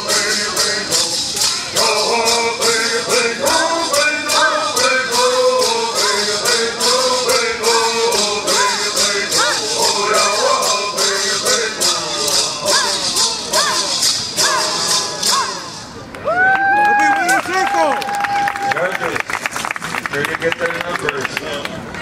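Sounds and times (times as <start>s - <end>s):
group chanting: 0.0s - 15.7s.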